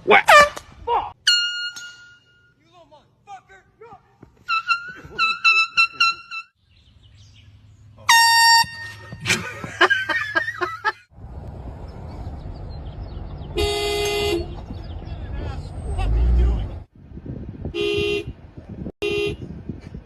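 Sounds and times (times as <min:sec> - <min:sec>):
air horn blasts: 0:04.4 - 0:06.5, 0:08.0 - 0:09.2, 0:13.6 - 0:14.6, 0:17.7 - 0:18.4, 0:19.0 - 0:19.5.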